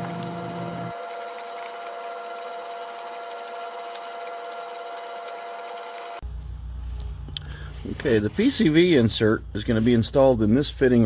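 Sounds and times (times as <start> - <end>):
small electric motor whining: 0.0 - 6.2.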